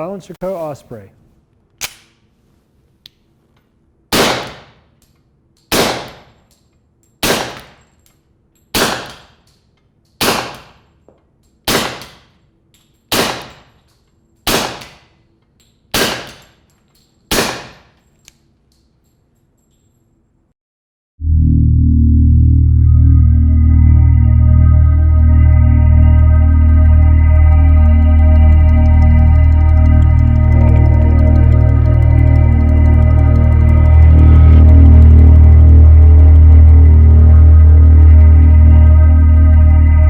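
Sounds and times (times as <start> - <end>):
suppressed pistol shots: 4.1 - 4.9, 5.7 - 6.4, 7.2 - 7.9, 8.8 - 9.5, 10.2 - 10.9, 11.7 - 12.3, 13.1 - 13.8, 14.5 - 15.1, 15.9 - 16.6, 17.3 - 18.0.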